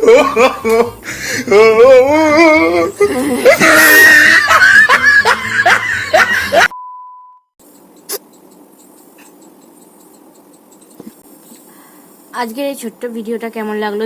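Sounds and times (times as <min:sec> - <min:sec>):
person laughing loudly: 0:00.0 - 0:06.7
short steady beep: 0:06.7 - 0:07.5
faint hiss: 0:07.6 - 0:14.0.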